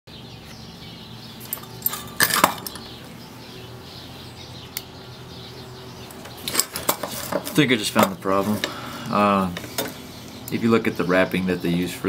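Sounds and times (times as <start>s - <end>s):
steady low hum: 0.2s - 12.0s
objects clinking and knocking: 1.4s - 3.0s, 6.1s - 8.8s.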